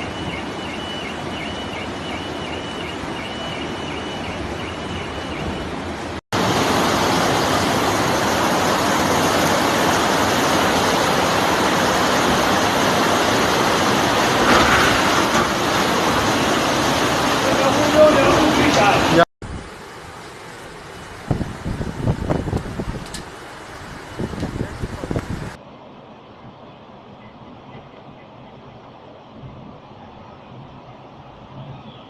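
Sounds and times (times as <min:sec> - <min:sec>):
floodwater rushing: 0:00.0 - 0:25.6.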